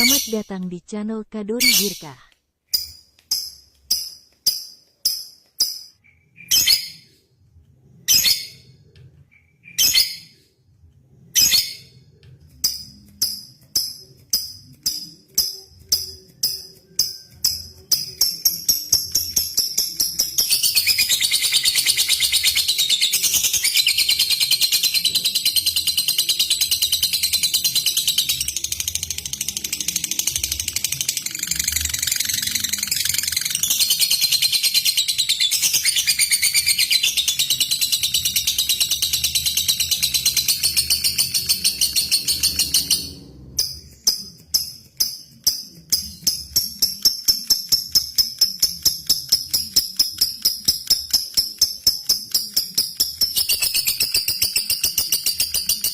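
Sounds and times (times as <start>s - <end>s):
lovebird chattering trill: 0.0s - 0.7s, 1.5s - 2.2s, 18.0s - 43.1s
bird sharp rapid ticks: 13.0s - 43.0s, 43.8s - 55.9s.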